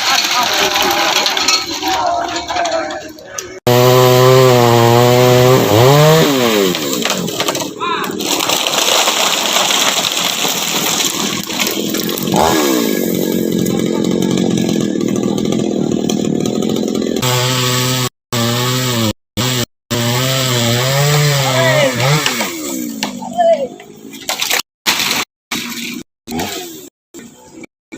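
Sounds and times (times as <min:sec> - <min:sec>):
chainsaw cutting wood: 0:00.0 - 0:01.7, 0:03.6 - 0:23.0, 0:26.3 - 0:26.9.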